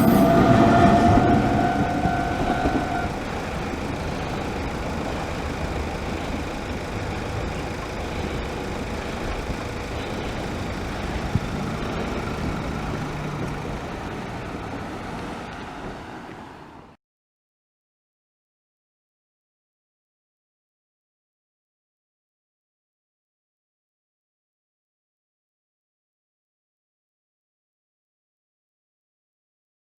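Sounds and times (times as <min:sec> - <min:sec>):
rumble of road vehicles: 0:00.0 - 0:17.0.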